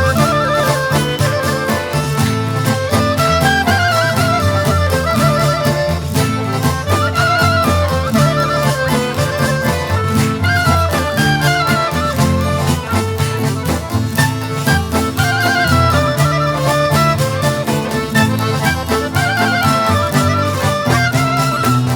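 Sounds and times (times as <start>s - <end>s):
folk dance music: 0.0s - 21.9s.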